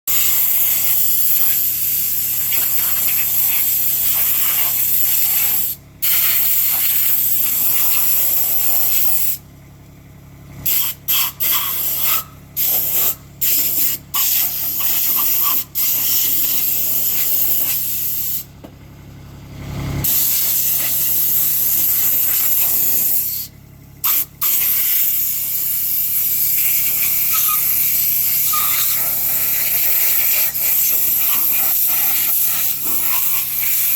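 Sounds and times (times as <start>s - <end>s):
water jet spraying: 26.3s - 33.9s.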